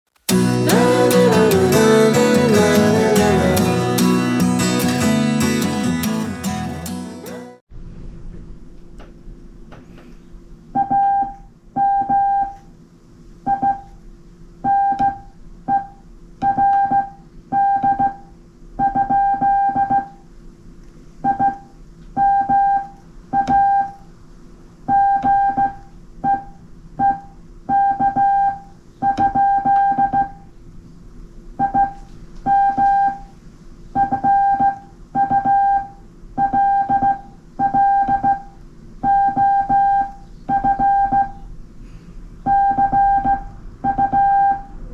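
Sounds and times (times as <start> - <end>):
morse code beeps: 10.8 - 12.6, 13.5 - 13.9, 14.7 - 18.2, 18.8 - 20.1, 21.2 - 21.6, 22.2 - 24.0, 24.9 - 30.4, 31.6 - 33.3, 34.0 - 41.4, 42.5 - 44.7.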